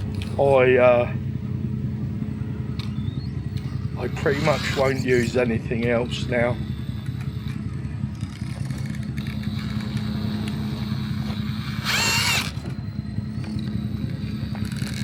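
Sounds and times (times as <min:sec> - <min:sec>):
electric motor running: 0:02.2 - 0:15.0
high-pitched squeal: 0:02.9 - 0:05.6, 0:10.8 - 0:12.7.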